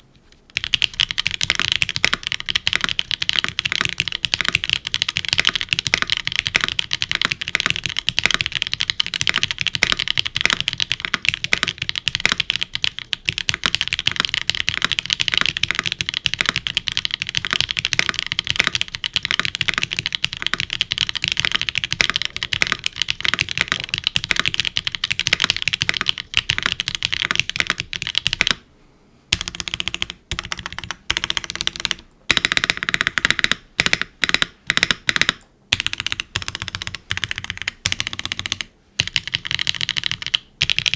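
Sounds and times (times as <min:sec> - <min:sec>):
mechanical keyboard typing: 0:00.4 - 0:28.6, 0:29.3 - 0:40.9.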